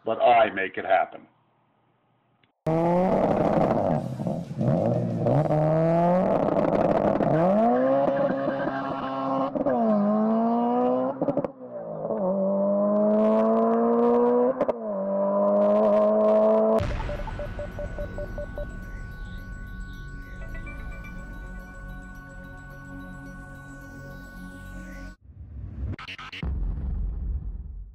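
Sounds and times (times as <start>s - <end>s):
car engine accelerating hard: 2.7s - 16.8s.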